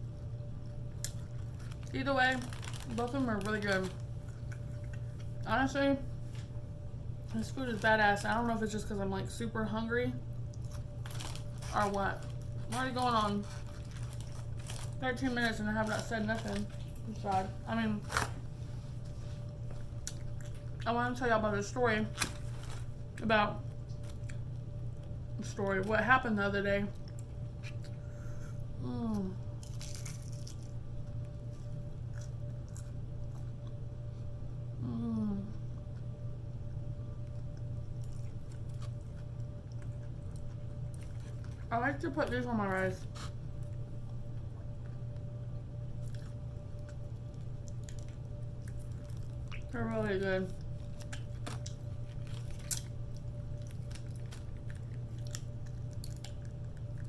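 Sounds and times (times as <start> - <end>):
low electrical hum: 0.0 - 57.0
food crunching: 0.7 - 5.5, 10.4 - 21.2, 29.5 - 33.9, 36.7 - 57.0
person humming mm: 28.8 - 29.4, 34.8 - 35.7.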